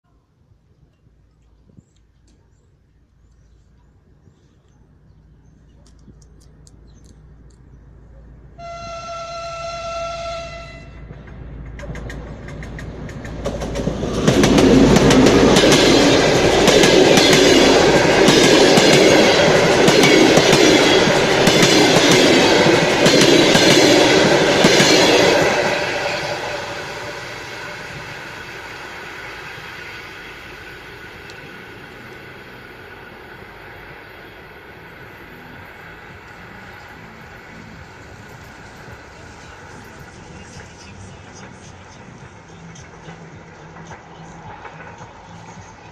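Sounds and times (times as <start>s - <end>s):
passing train engine noise: 0.3s - 45.9s
locomotive horn: 8.6s - 11.1s
wheels clattering over rail joints: 11.0s - 26.4s.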